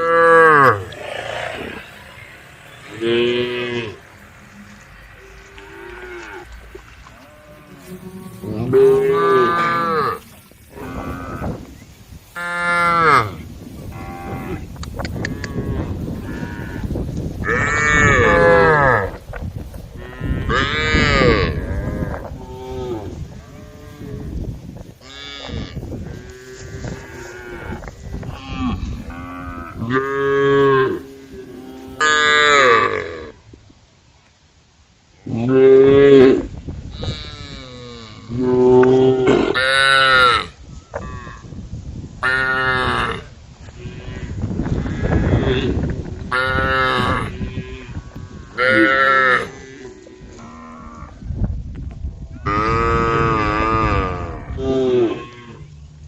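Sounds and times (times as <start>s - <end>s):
cow mooing: 0.0s - 11.6s
cows mooing: 0.0s - 11.7s, 12.4s - 19.2s, 20.0s - 24.4s, 25.0s - 33.4s, 42.2s - 51.2s, 52.4s - 55.7s
faint cow calls: 0.0s - 11.8s
low rumbling noise: 0.0s - 32.0s.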